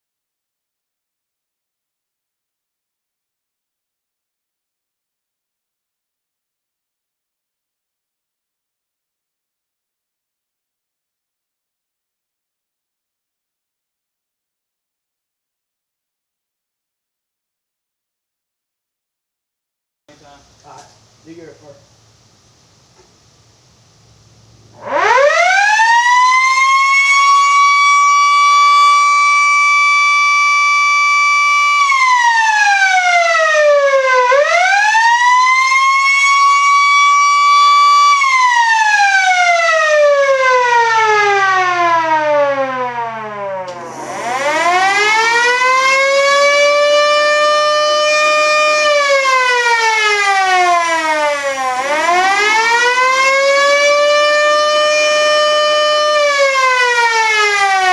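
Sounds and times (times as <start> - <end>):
warning siren wailing: 24.6 - 57.9.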